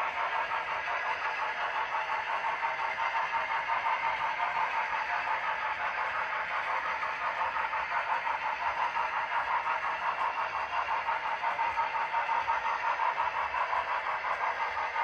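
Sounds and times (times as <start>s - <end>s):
model locomotive sound pulsing: 0.0s - 15.0s.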